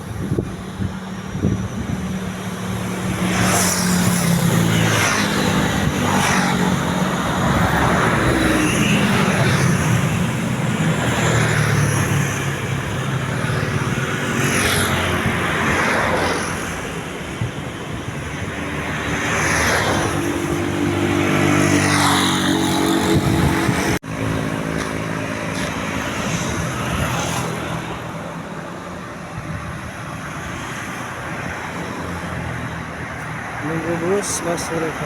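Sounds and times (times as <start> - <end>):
vehicle engines running: 32.0 - 35.0.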